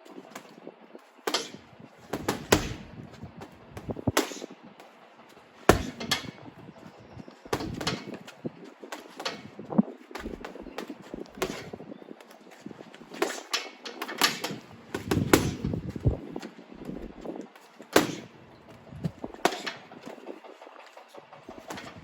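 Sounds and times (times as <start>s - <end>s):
gloves thudding on punching bag: 1.3s - 4.6s, 5.7s - 6.4s, 7.5s - 8.3s, 10.2s - 11.8s, 14.0s - 16.1s, 17.9s - 18.3s.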